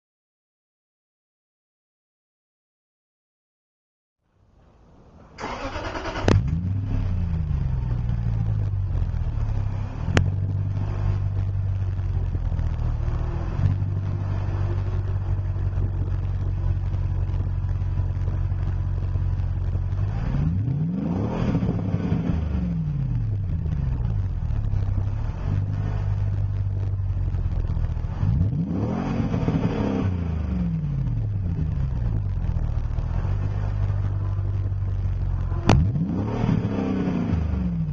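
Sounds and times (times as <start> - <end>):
engine cranking and starting: 5.4 - 7.3
engine idling: 5.4 - 37.9
engine revving: 5.4 - 37.9.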